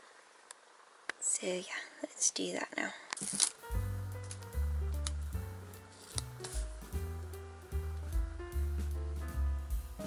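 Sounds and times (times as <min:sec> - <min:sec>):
background music: 0:03.3 - 0:10.0.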